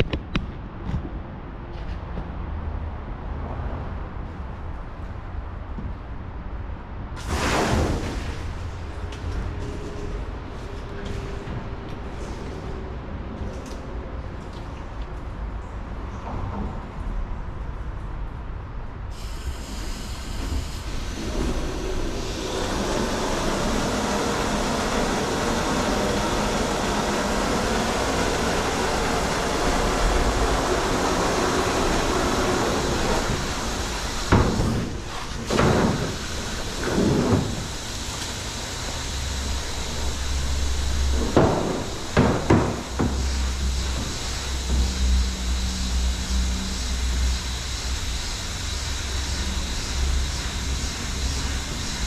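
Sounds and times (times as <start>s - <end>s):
water from hose running into tank: 21.1s - 47.4s
loud knocks and clunks: 34.2s - 37.6s, 41.1s - 45.0s.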